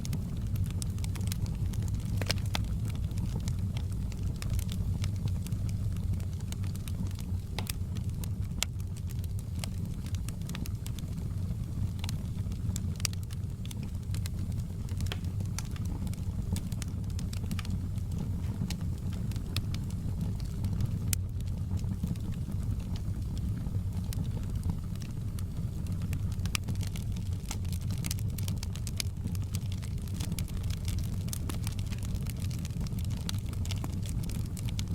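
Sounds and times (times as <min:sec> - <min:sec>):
low rumble of flames: 0:00.0 - 0:34.9
wood fire crackling and popping: 0:00.0 - 0:34.9.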